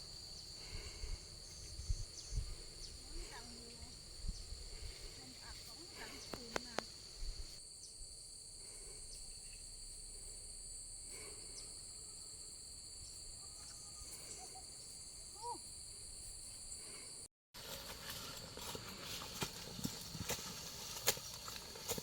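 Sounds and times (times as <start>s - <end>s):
insects trilling: 0.0s - 17.3s.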